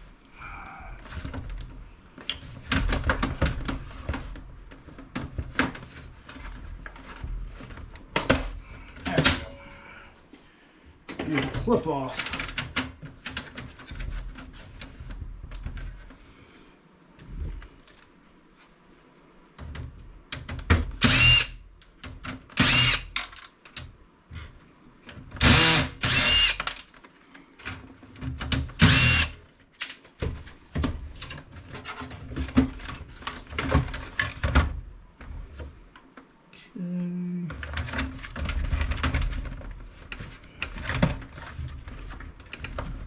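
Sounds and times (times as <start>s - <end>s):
power drill spinning: 21.0s - 21.6s, 22.6s - 23.2s, 25.4s - 26.8s, 28.8s - 29.4s.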